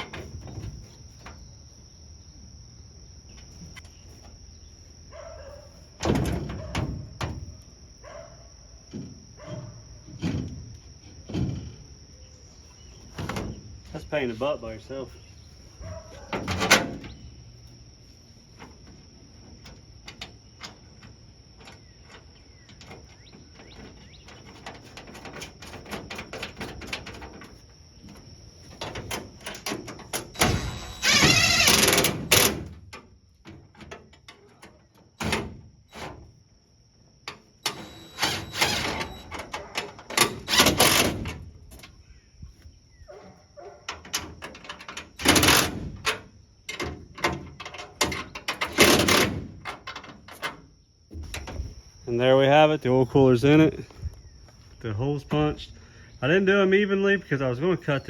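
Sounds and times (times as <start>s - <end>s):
tools clanking on metal: 15.8s - 17.2s, 18.6s - 36.2s, 43.6s - 51.7s.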